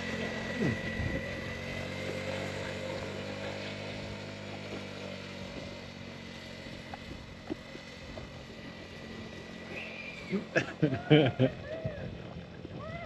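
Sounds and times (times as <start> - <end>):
atv engine running: 0.0 - 13.0.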